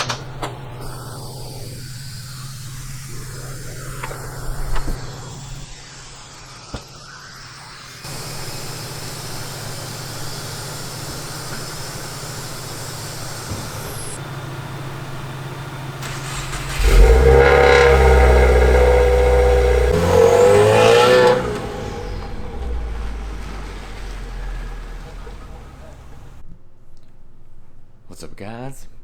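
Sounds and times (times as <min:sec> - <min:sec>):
car engine revving: 0:08.0 - 0:26.4.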